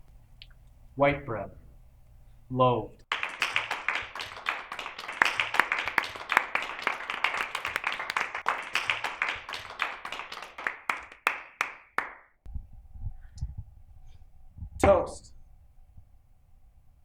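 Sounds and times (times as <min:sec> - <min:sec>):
faint steady hum: 0:00.0 - 0:03.1, 0:12.5 - 0:17.0
people clapping: 0:03.1 - 0:12.4.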